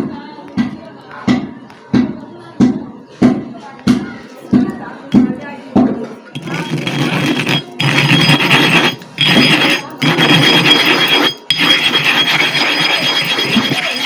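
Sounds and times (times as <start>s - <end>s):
scraping on sharpening stone: 6.4s - 14.0s.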